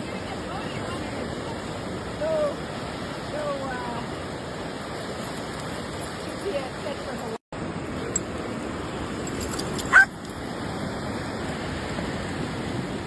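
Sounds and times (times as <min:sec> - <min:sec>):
surf washing: 0:00.0 - 0:13.0
dog yelping: 0:09.8 - 0:10.2.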